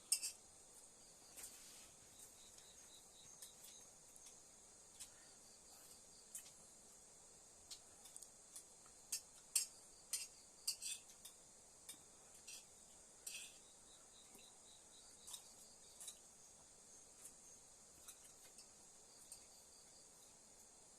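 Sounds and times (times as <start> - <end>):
crickets chirping: 0.0 - 20.9
cutlery clinking against dishes: 0.1 - 0.4, 9.1 - 13.6.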